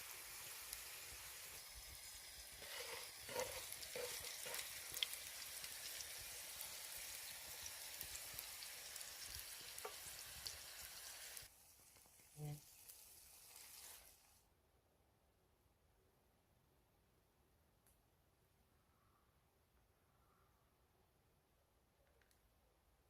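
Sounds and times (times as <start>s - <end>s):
food sizzling in hot fat: 0.0s - 14.4s.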